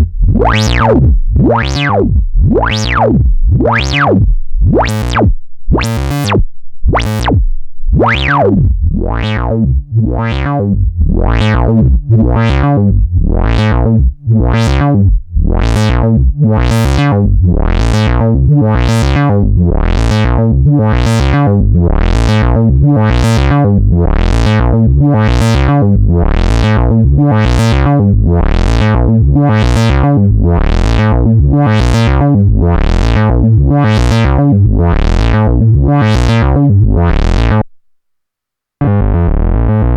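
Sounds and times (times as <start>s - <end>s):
low synthesizer drone: 0.0s - 37.7s, 38.8s - 39.9s
synthesizer filter sweep wah: 0.0s - 37.7s, 38.8s - 39.9s.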